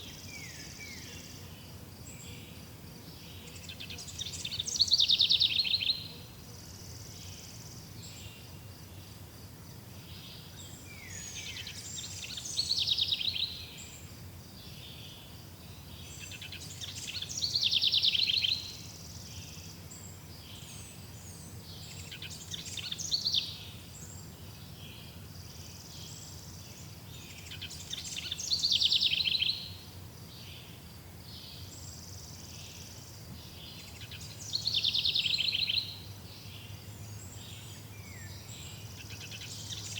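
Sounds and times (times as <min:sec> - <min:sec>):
faint birds chirping: 0:00.0 - 0:39.9.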